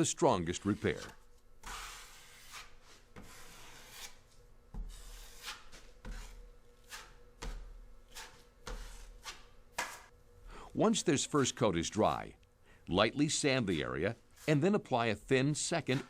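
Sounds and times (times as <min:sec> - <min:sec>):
drywall knife scraping compound: 0:00.5 - 0:10.1, 0:15.5 - 0:16.0.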